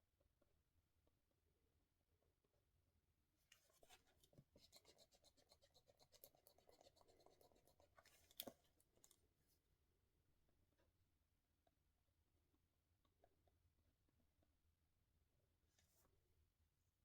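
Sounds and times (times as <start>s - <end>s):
pen scratching on paper: 3.7s - 8.5s.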